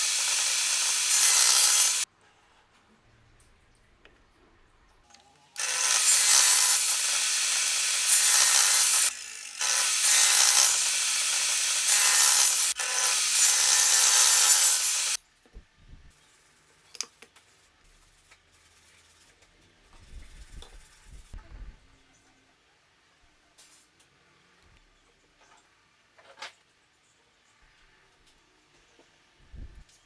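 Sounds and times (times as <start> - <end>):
electric power tool on wood: 0.0 - 2.1, 5.6 - 15.2.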